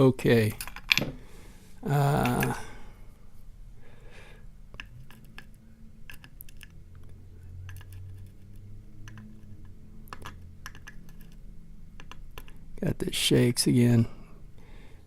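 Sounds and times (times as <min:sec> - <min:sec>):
small metal parts tapping on surface: 0:00.5 - 0:01.2.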